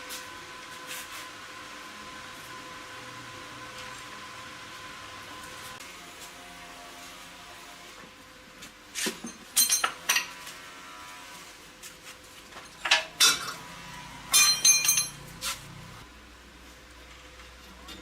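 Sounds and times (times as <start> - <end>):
metal tools clinking: 9.2 - 10.3, 12.7 - 13.6, 14.3 - 15.9.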